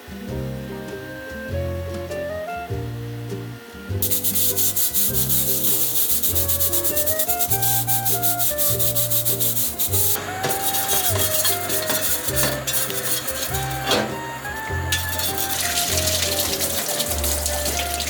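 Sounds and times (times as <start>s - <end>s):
background music with bass line: 0.0s - 18.0s
fast scraping strokes: 4.0s - 18.0s.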